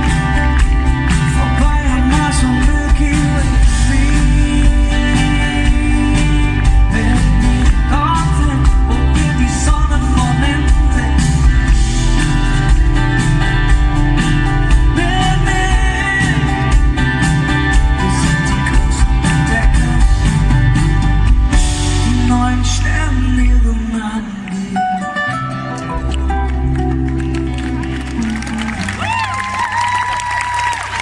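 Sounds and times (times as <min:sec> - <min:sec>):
person singing: 0:00.0 - 0:12.8, 0:14.7 - 0:21.0, 0:27.7 - 0:29.5
guitar: 0:00.0 - 0:31.0
live band playing pop song: 0:00.0 - 0:31.0.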